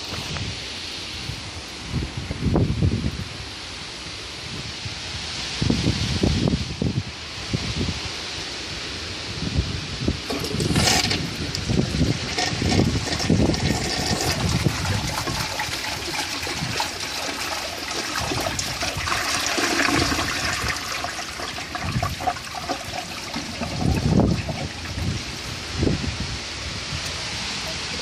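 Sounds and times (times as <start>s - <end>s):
toilet flushing: 10.3s - 25.7s.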